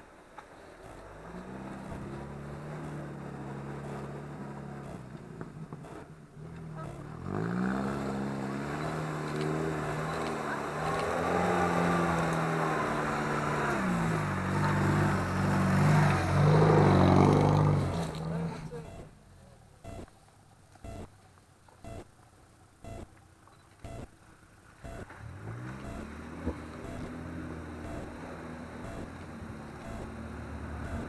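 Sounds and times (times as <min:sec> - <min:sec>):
engine revving: 0:00.8 - 0:19.1, 0:24.8 - 0:31.0.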